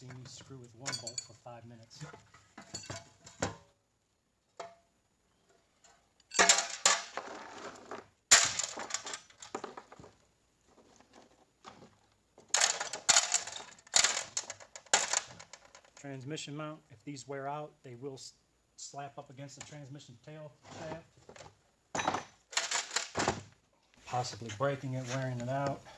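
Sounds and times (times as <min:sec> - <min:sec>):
metal parts clinking: 0:00.0 - 0:01.4, 0:02.0 - 0:03.4, 0:06.3 - 0:07.2, 0:08.3 - 0:09.9, 0:12.5 - 0:16.0, 0:22.0 - 0:23.2.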